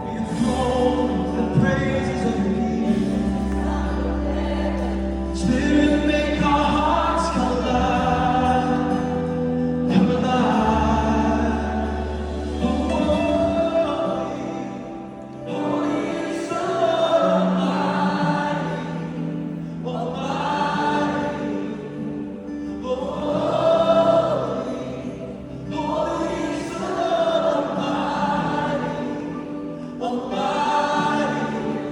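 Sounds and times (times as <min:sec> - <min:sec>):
choir singing worship song: 0:00.0 - 0:31.9.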